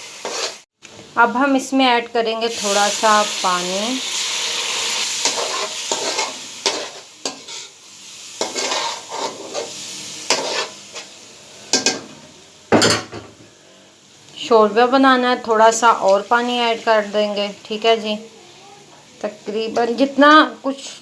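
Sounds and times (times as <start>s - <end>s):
food sizzling in a pan: 0.0s - 21.0s
spoon scraping a pan: 0.1s - 0.6s, 4.6s - 7.8s, 8.4s - 12.1s.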